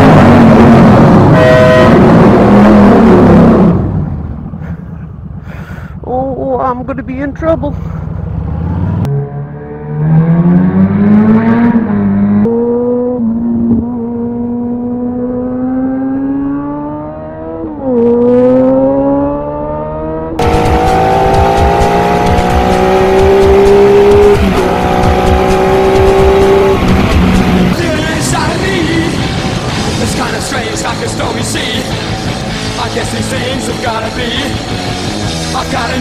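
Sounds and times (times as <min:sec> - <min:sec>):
motorcycle engine accelerating: 0:00.0 - 0:36.0
motorcycle at high revs: 0:08.2 - 0:30.4.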